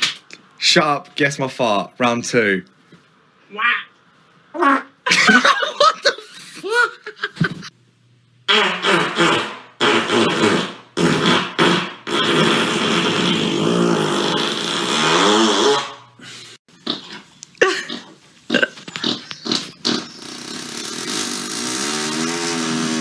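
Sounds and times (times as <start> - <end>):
person farting: 8.5 - 16.1, 16.7 - 23.0.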